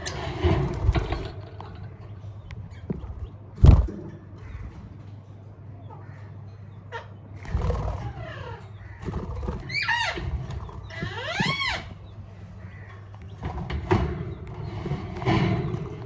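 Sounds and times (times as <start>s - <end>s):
parrots squawking: 6.9s - 13.2s.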